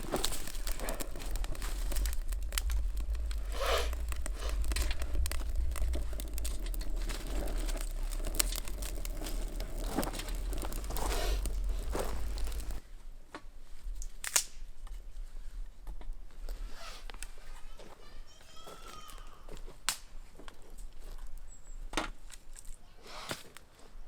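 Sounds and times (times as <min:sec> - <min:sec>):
dry leaves and twigs crunching: 0:00.0 - 0:12.8
low steady rumble: 0:00.0 - 0:12.8.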